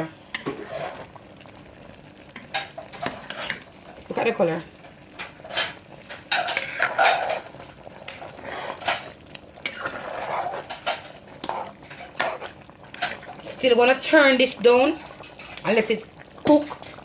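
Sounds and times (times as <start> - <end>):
spoon scraping a pot: 0.3 - 1.2, 2.4 - 3.7, 5.2 - 13.5.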